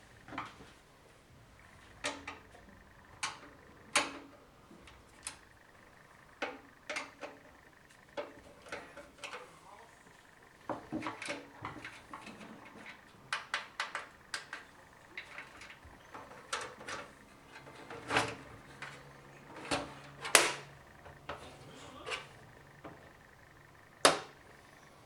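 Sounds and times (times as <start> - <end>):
computer case clicks and knocks: 10.2 - 24.6.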